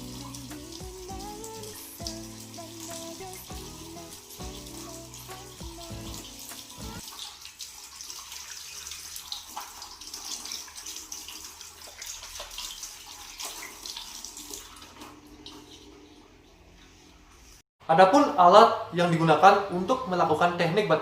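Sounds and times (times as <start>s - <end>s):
music: 0.0s - 7.0s
tap water running into sink: 0.0s - 16.0s.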